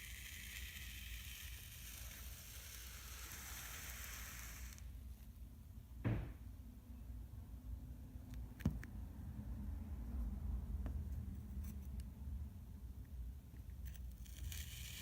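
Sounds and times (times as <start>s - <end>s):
kinetic sand hissing: 0.0s - 5.0s
soft knock: 6.0s - 6.4s.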